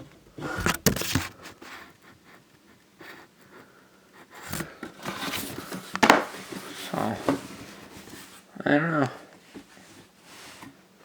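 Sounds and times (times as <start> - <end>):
cardboard rubbing and scraping: 0.4 - 1.9, 4.4 - 8.4
sharp knocks on cardboard box: 0.6 - 1.4, 6.0 - 6.3.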